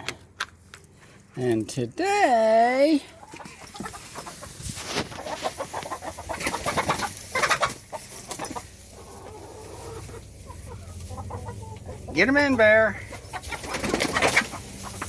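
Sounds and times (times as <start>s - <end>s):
chickens clucking: 3.1s - 15.0s
rustling and scratching: 3.2s - 15.0s.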